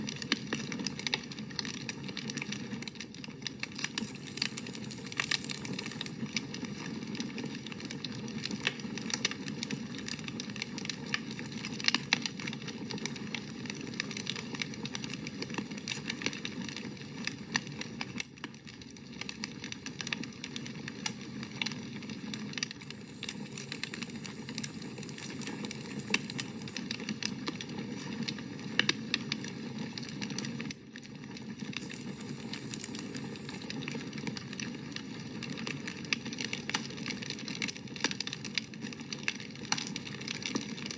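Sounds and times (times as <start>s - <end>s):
campfire crackling and popping: 0.0s - 40.9s
high hiss: 31.8s - 33.6s.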